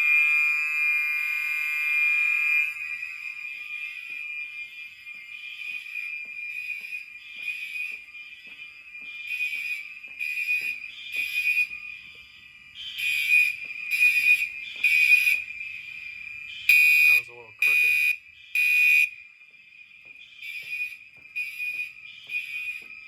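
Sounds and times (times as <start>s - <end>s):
steady alarm horn tone: 0.0s - 8.5s, 12.8s - 16.0s, 16.7s - 19.2s, 20.4s - 23.0s
fire alarm horn pulses: 0.0s - 12.2s, 12.8s - 15.5s, 16.7s - 19.2s, 20.4s - 23.0s.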